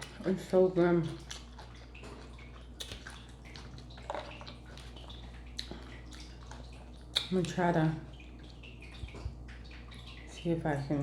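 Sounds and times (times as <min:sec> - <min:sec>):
chewing salad: 0:00.0 - 0:10.4
wet mouth clicks: 0:07.1 - 0:07.6.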